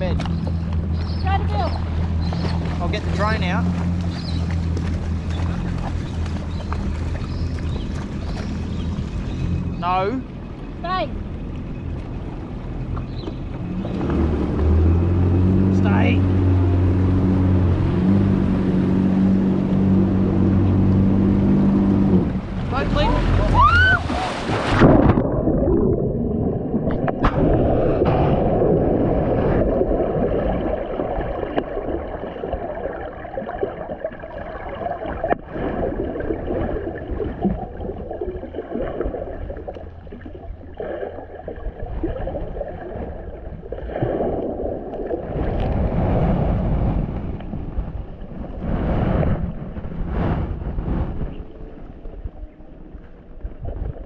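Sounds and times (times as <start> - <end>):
water sloshing and gurgling: 0.0 - 54.0
wind noise on microphone: 41.6 - 54.0.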